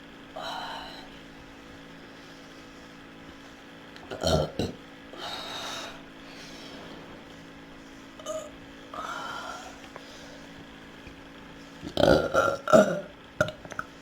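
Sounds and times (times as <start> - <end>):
girl burping loudly: 4.1 - 4.8, 11.8 - 13.9.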